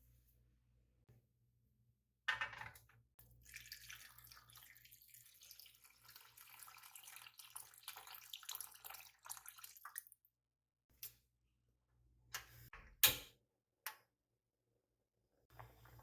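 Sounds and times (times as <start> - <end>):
water running from tap: 3.4 - 10.2.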